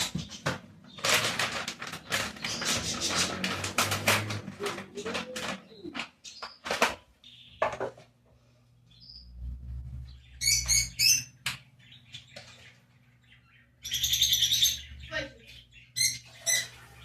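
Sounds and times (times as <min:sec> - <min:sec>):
sharp knocks and clatters: 0:00.0 - 0:08.1
birds chirping: 0:00.0 - 0:17.0.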